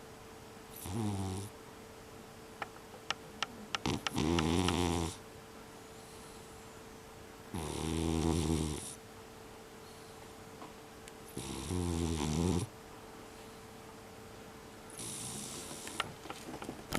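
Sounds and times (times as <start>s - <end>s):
cat snoring: 0.8s - 1.5s, 3.8s - 5.2s, 7.5s - 9.0s, 11.3s - 12.7s, 14.9s - 16.0s.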